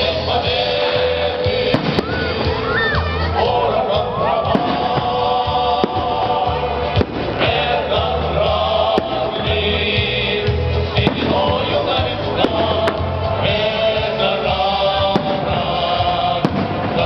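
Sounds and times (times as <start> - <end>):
choral music with low bass: 0.0 - 17.0
firework bangs: 1.5 - 2.7, 4.4 - 9.6, 10.9 - 14.2, 14.8 - 17.0.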